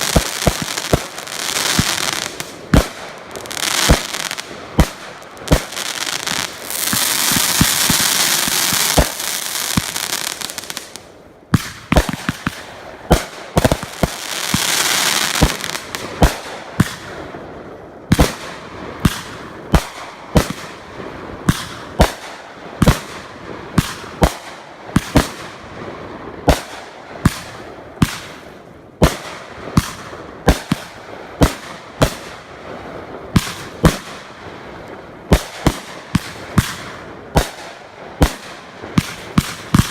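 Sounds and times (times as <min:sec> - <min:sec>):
fireworks hissing crackle: 0:00.0 - 0:11.1, 0:13.6 - 0:16.0
firework bangs: 0:00.0 - 0:17.3
firework sharp reports: 0:00.0 - 0:39.9.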